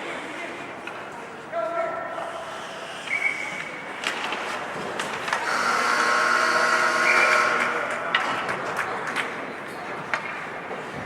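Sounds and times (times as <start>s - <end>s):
arena horn blaring: 5.5s - 7.7s.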